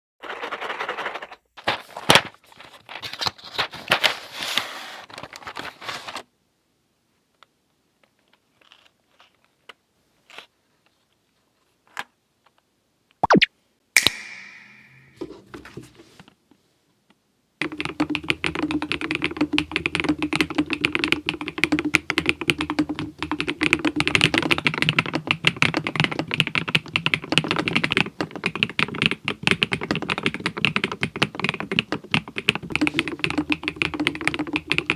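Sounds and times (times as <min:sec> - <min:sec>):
typing on mechanical keyboard: 0:17.6 - 0:34.9.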